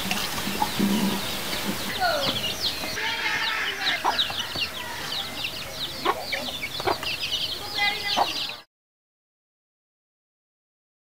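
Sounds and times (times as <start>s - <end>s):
flock of birds chirping: 0.0s - 8.7s.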